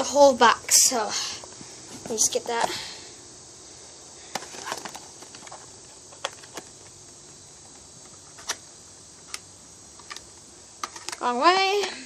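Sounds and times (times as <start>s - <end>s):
packaging clicks and taps: 4.3s - 8.6s.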